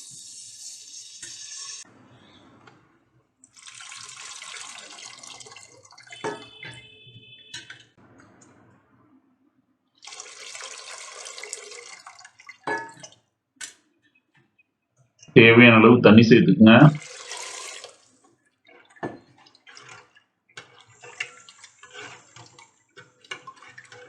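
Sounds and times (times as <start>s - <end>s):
liquid pouring into pan: 3.5s - 6.9s, 10.0s - 13.3s, 17.0s - 24.0s
metal vessels clinking: 5.4s - 7.8s, 12.3s - 13.2s, 18.6s - 24.0s.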